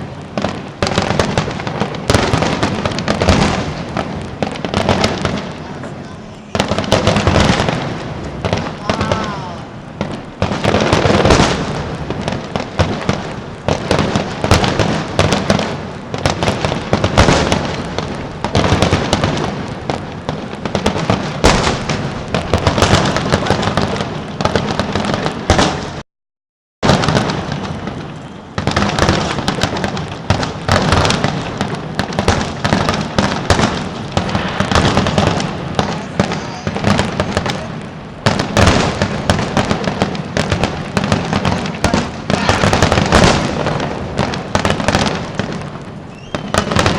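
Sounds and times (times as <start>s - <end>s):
fireworks bangs and crackling: 0.0s - 26.0s, 26.8s - 46.9s.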